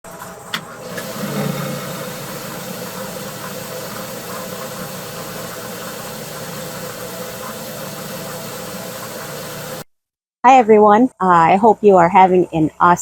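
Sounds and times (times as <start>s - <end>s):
machine humming and whirring: 0.1s - 9.8s.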